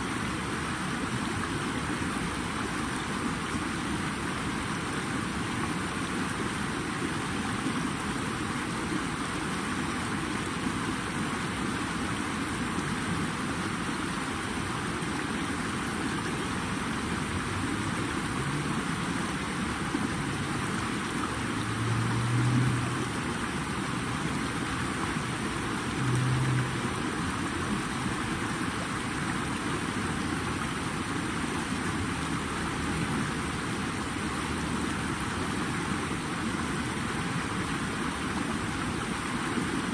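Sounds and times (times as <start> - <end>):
flowing water: 0.0 - 39.9.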